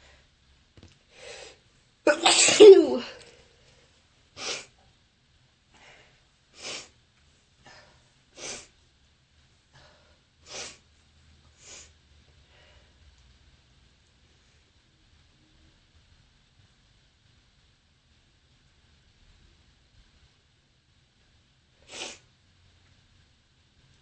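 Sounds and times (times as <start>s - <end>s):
person sneezing: 2.1s - 3.2s.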